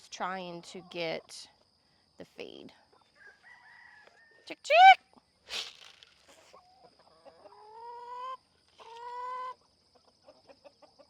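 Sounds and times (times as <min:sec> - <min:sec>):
chickens drawn-out calls: 0:04.6 - 0:05.0, 0:07.1 - 0:09.6
chickens clucking: 0:06.8 - 0:11.0.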